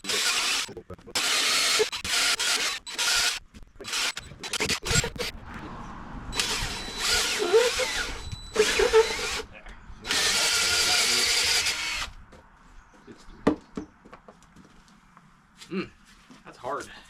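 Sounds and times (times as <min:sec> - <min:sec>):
cordless power drill running: 0:00.1 - 0:05.2, 0:06.4 - 0:12.1.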